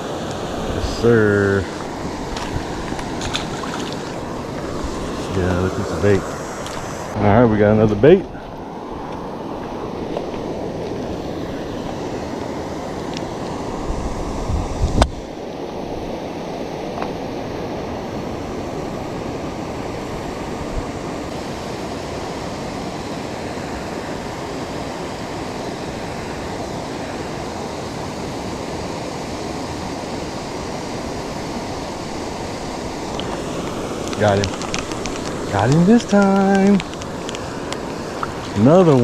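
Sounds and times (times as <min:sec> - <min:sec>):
waterfall rushing: 0:00.0 - 0:07.2, 0:16.2 - 0:39.0.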